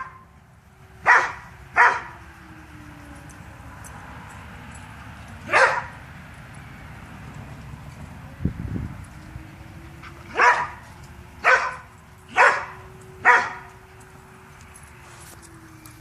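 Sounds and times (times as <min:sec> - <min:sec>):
dog barking: 0:01.0 - 0:02.1, 0:05.5 - 0:05.9, 0:10.3 - 0:10.8, 0:11.4 - 0:13.7.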